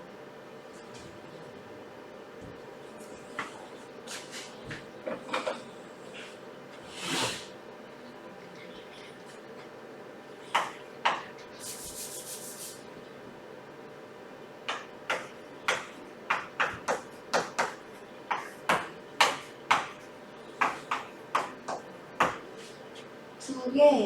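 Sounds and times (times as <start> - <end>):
rasping rub on paper: 11.6 - 12.8.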